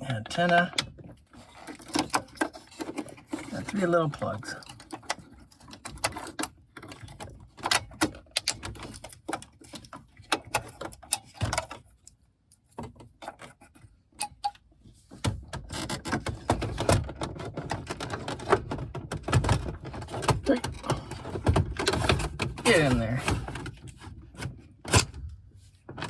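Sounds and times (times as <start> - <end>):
plastic clicks and rattles: 0.2 - 12.2.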